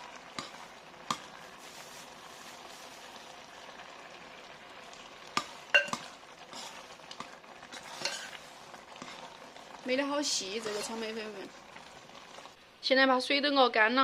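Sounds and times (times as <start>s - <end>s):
syrup bubbling and sizzling in a pot: 0.0s - 14.0s
sharp clinks against a pot: 5.7s - 6.1s.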